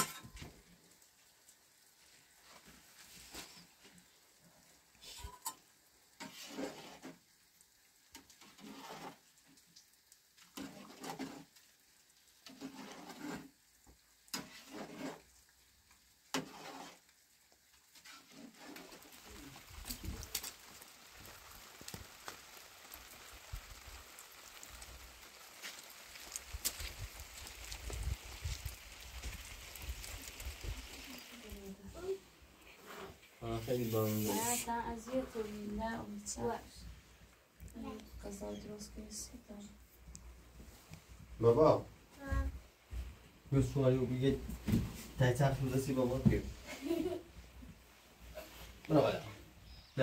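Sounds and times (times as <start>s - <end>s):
heavy rain falling: 6.2s - 17.2s, 18.0s - 32.2s.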